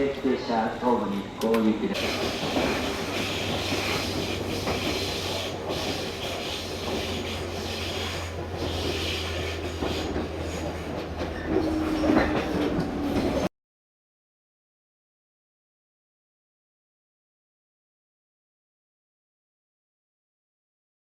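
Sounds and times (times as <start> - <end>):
electric train on rails: 0.0 - 13.5.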